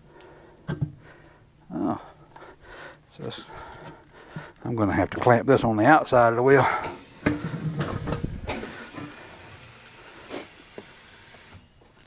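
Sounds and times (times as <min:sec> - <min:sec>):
steady hiss: 0:06.4 - 0:12.0.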